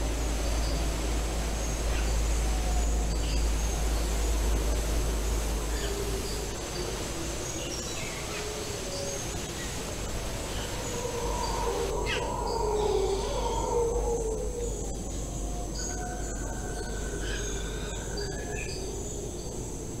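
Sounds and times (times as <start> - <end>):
high insect drone: 0.0 - 20.0.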